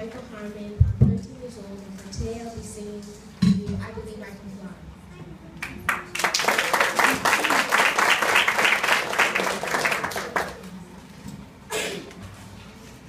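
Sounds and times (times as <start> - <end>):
audience applauding: 5.6 - 10.8.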